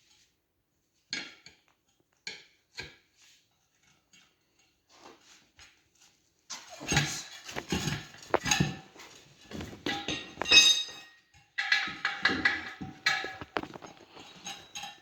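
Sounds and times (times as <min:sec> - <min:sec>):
metallic clanks and scrapes: 0:06.5 - 0:15.0.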